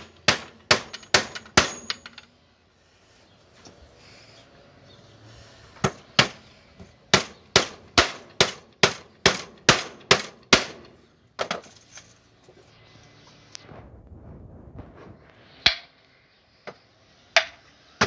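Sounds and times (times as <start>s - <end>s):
hammer driving nail into wood: 0.0s - 2.0s.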